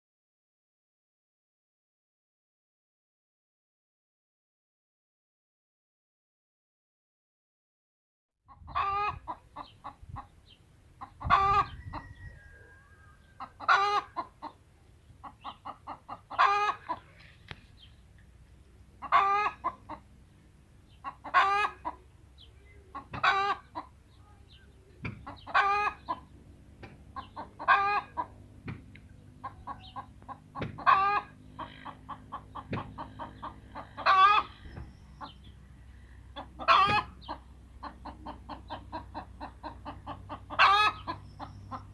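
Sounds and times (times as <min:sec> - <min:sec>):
hen cackling: 0:08.5 - 0:17.3, 0:19.0 - 0:20.2, 0:20.9 - 0:26.3, 0:27.1 - 0:28.5, 0:29.4 - 0:41.9.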